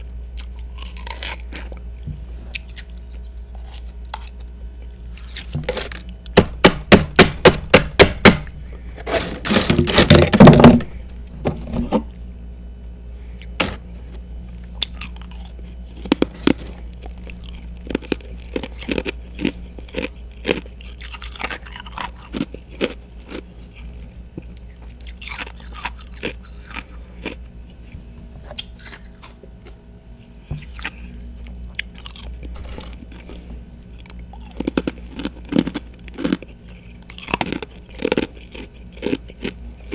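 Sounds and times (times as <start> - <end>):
person crunching ice: 5.2 - 11.0.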